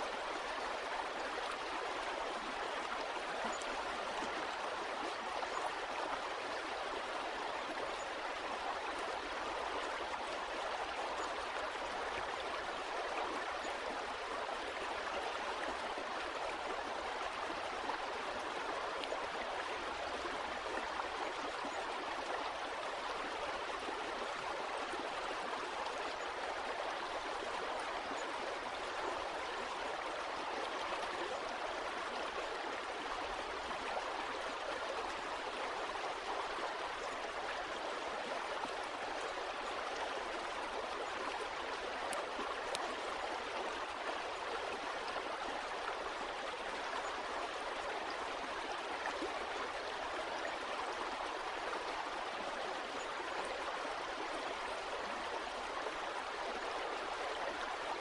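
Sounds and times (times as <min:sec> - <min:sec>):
stream water rushing: 0:00.0 - 0:58.0.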